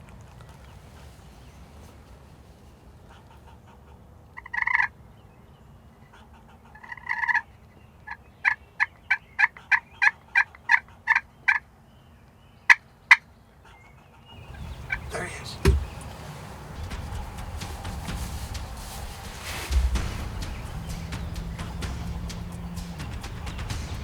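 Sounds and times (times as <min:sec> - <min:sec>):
sharp turkey clucks: 0:06.7 - 0:07.4, 0:14.4 - 0:17.3
turkey call yelps: 0:14.4 - 0:17.1.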